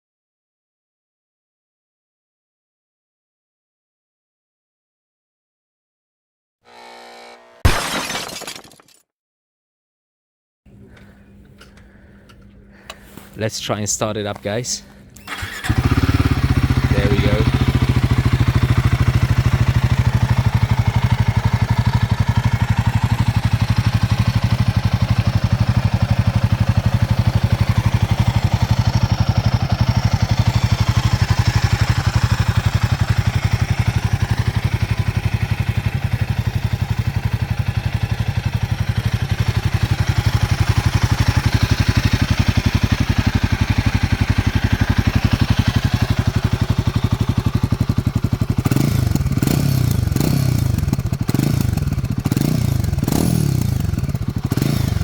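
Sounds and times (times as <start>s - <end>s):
motorcycle engine idling: 15.3s - 55.0s.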